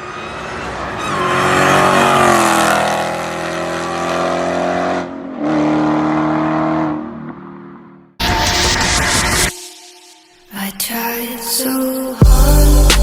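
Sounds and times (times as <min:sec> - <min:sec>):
car engine accelerating: 0:00.0 - 0:08.2.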